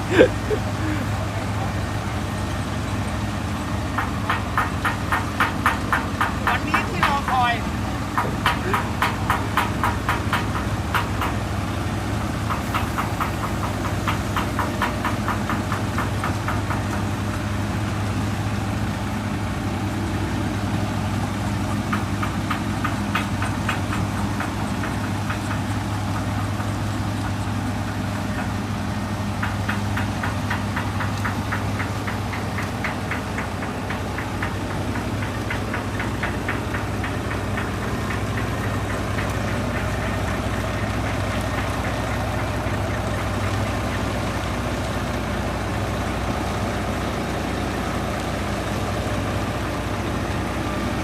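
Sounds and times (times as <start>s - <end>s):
diesel truck engine humming: 0.0s - 51.0s
fast even engine clatter: 0.0s - 51.0s.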